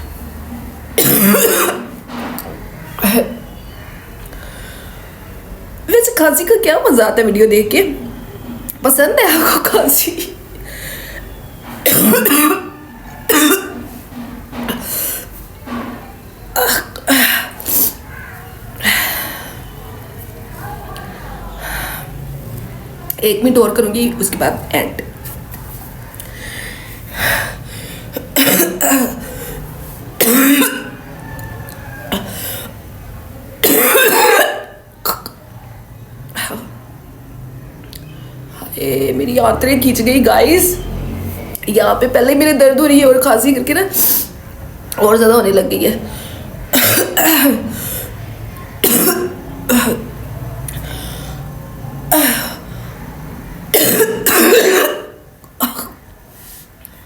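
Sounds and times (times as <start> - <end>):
woman coughing: 1.0 - 1.9, 11.9 - 13.8, 16.6 - 17.6, 28.2 - 29.4, 30.2 - 30.9, 33.6 - 35.4, 46.7 - 47.8, 48.8 - 50.1, 52.1 - 52.6, 53.7 - 56.0
woman clearing throat: 1.0 - 2.0, 11.9 - 13.9, 16.6 - 17.6, 28.2 - 29.4, 30.2 - 31.0, 32.1 - 32.4, 33.6 - 35.4, 46.7 - 47.8, 48.8 - 50.1, 52.1 - 52.7, 53.7 - 56.0.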